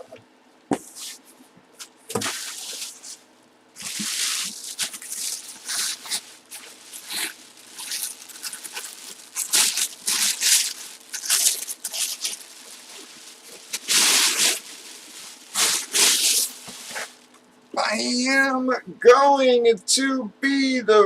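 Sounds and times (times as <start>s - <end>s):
packaging rustling and tearing: 1.8s - 3.2s, 3.8s - 17.4s.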